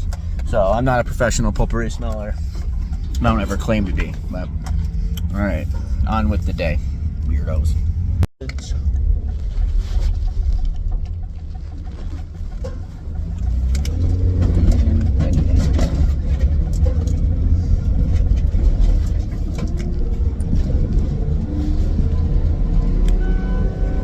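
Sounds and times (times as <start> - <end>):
road and engine rumble: 0.0 - 24.0.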